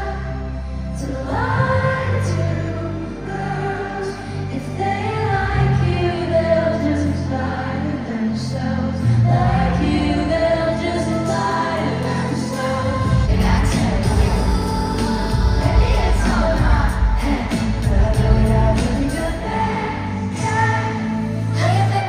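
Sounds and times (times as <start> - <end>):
pop song with woman singing: 0.0 - 22.0.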